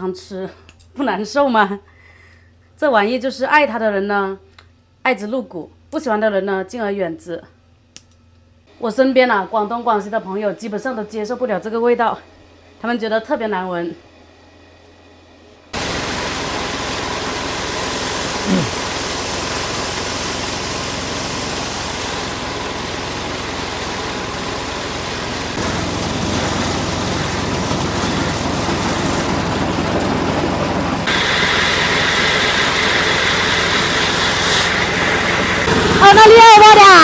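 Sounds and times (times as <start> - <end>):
vehicle engine and road noise: 15.8 - 37.0.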